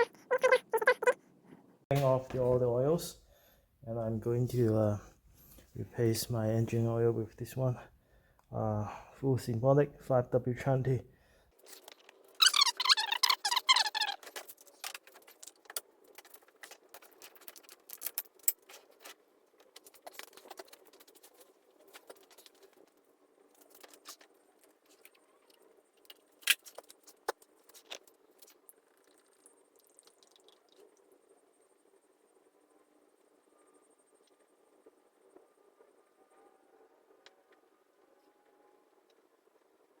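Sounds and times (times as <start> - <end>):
small objects clicking and rattling: 11.6 - 30.9.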